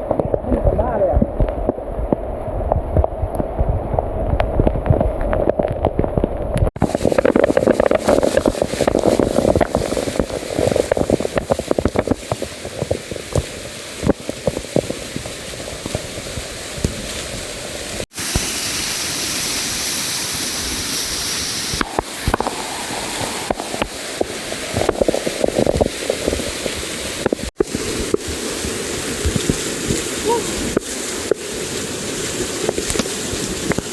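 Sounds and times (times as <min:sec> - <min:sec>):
microphone rumble: 0:00.0 - 0:13.2
waterfall rushing and splashing: 0:06.8 - 0:33.9.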